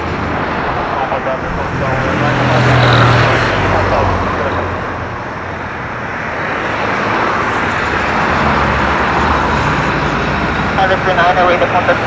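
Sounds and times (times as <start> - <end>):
jet engine rushing: 0.0 - 12.0.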